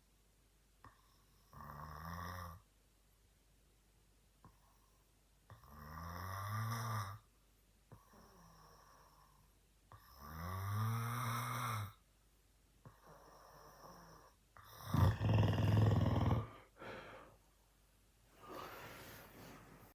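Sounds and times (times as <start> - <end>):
man snoring: 1.5 - 2.6, 5.6 - 7.2, 10.2 - 12.0, 14.7 - 16.6
soft breaths: 12.8 - 19.9.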